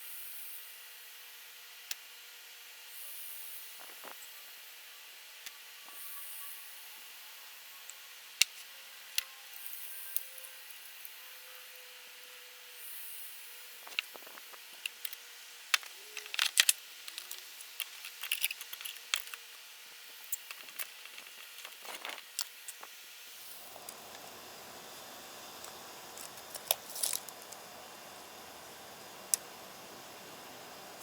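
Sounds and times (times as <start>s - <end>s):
tools and wood clicking: 14.8s - 19.6s, 20.2s - 22.9s, 25.6s - 27.6s
low steady noise: 19.2s - 31.0s.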